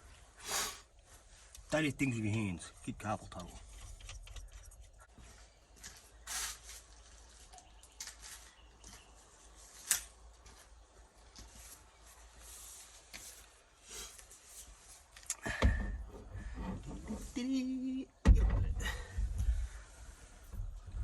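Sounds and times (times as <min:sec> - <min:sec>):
loud thump: 0:18.2 - 0:19.5.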